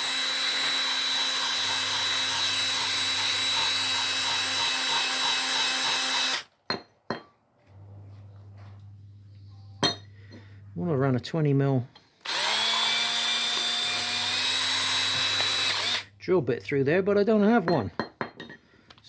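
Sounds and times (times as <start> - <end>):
power drill boring through steel: 0.0 - 6.5, 12.2 - 16.1.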